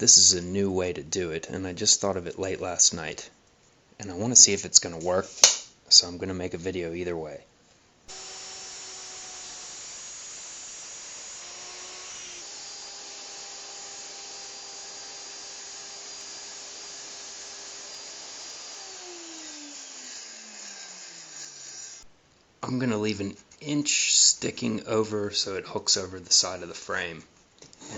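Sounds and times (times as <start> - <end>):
electric power tool motor running: 8.1 - 22.0.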